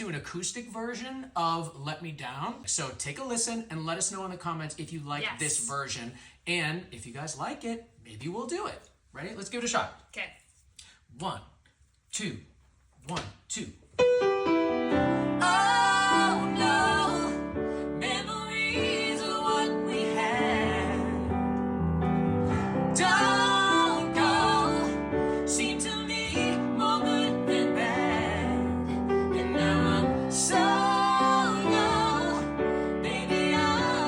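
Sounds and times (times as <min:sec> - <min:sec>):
piano chords: 0:14.0 - 0:34.0
person singing with vibrato: 0:14.9 - 0:21.3, 0:22.4 - 0:34.0.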